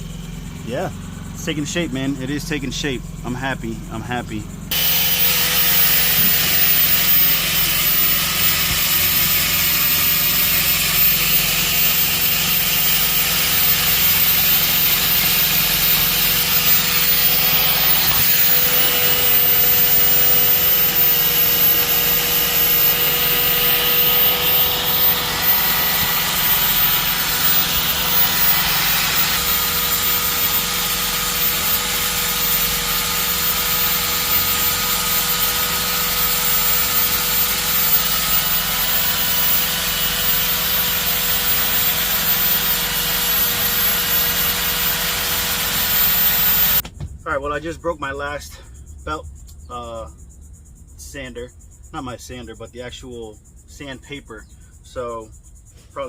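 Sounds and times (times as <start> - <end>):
belt sander motor whine: 4.7 - 46.8
sanding belt scraping: 4.7 - 46.8.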